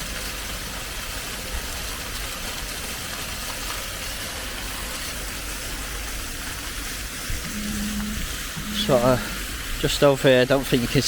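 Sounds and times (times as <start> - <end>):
gushing hiss of spray: 0.0 - 11.0
low rumble: 7.3 - 9.6.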